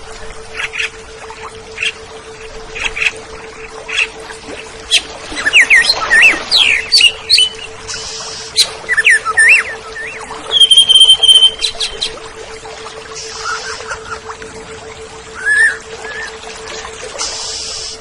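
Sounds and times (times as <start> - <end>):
faint steady hum: 0.0 - 18.0
bird singing whistled notes: 8.9 - 12.1, 15.4 - 16.3.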